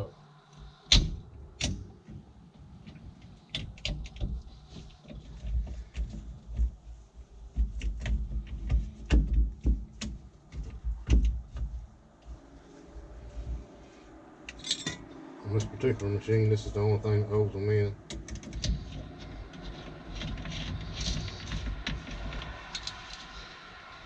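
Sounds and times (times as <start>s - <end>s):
low rumble: 0.0s - 24.0s.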